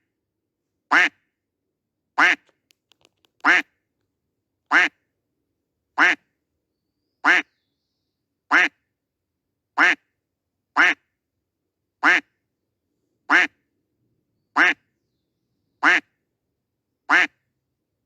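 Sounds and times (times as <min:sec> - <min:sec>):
duck quack sound effect: 0:10.8 - 0:11.0, 0:12.0 - 0:12.2, 0:17.1 - 0:17.4.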